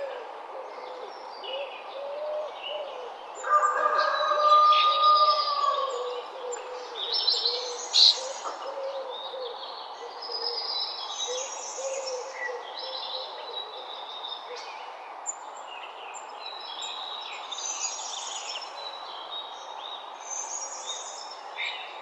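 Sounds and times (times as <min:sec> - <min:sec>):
low repeated cooing call: 0:00.0 - 0:14.8
songbirds singing and chirping: 0:00.0 - 0:22.0.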